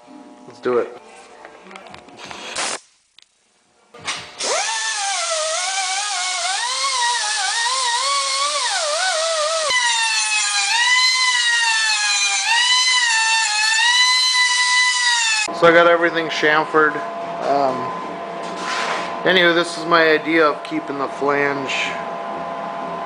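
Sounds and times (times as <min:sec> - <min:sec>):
grinder whining on metal: 0:04.4 - 0:15.5.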